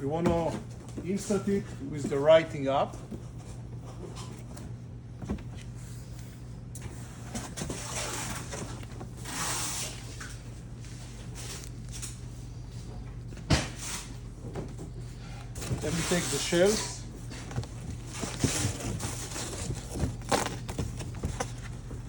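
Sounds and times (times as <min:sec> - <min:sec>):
cardboard scraping on cardboard: 0:15.7 - 0:17.0, 0:17.7 - 0:22.0.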